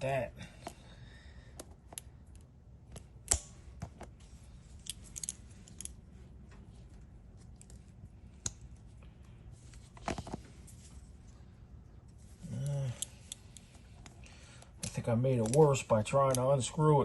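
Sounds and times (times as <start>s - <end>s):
locking pliers clicking and scraping: 1.6s - 3.6s, 4.7s - 6.0s, 12.5s - 16.5s.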